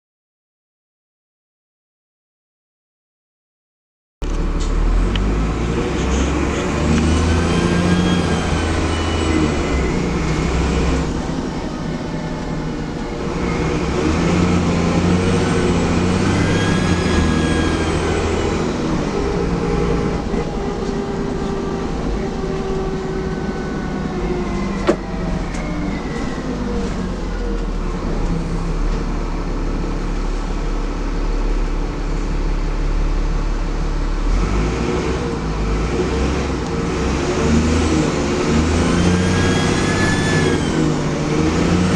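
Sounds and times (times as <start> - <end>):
bus diesel engine: 4.2 - 41.9
turbocharger whistle: 7.2 - 10.2, 15.4 - 18.6, 38.8 - 40.9.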